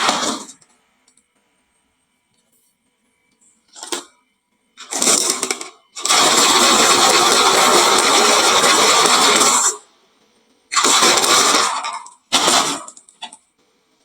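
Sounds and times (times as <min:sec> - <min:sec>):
marbles rattling down wooden run: 0:04.9 - 0:09.7.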